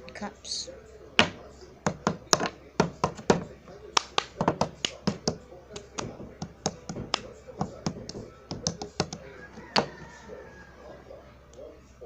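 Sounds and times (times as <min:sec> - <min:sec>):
cups tapping on hard surface: 0:06.0 - 0:10.0.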